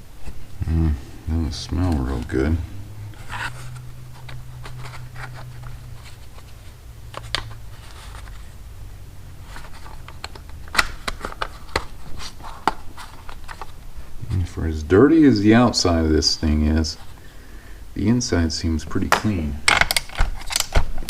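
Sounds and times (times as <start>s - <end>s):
steady low hum: 0.0s - 19.7s.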